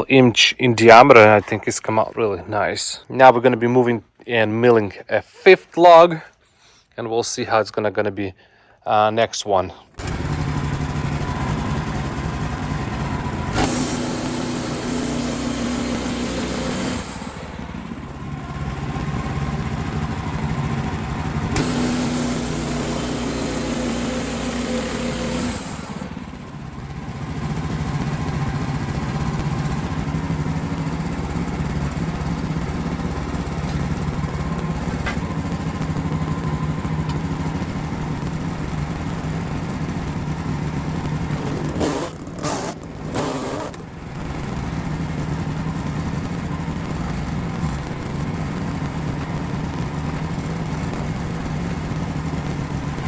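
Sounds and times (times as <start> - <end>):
loud harsh noise: 10.0 - 46.7
sawmill engine running: 10.0 - 53.0.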